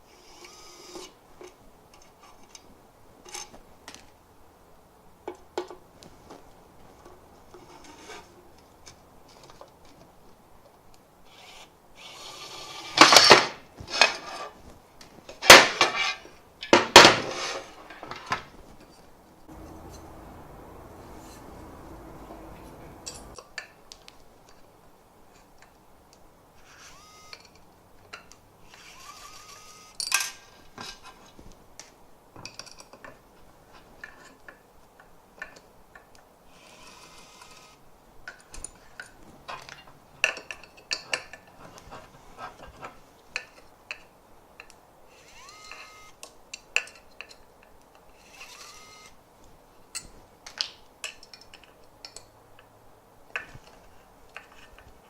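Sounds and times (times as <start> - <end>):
electric screwdriver whine: 0.1 - 1.1, 11.3 - 13.4, 26.6 - 27.6, 28.7 - 30.0, 36.6 - 37.8, 45.1 - 46.2, 48.2 - 49.2
small metal parts clinking: 22.8 - 23.4, 30.0 - 31.0.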